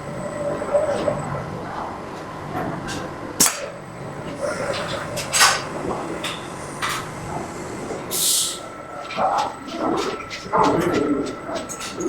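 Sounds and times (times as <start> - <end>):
machinery hum with high whine: 0.0 - 12.0
sharp hisses and clacks: 8.1 - 8.7.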